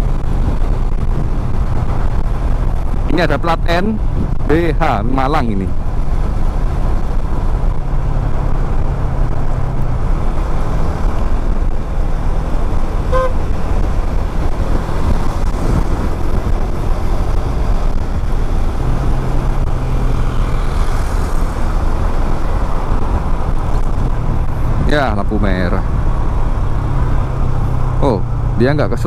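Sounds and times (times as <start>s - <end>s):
motorcycle engine and road noise: 0.0s - 29.0s
short horn beep: 13.1s - 13.5s.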